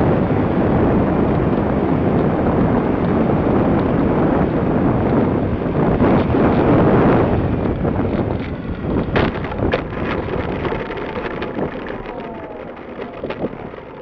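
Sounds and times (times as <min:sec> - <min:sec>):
wind rushing over camera: 0:00.0 - 0:14.0
clicks and rattles: 0:08.0 - 0:14.0.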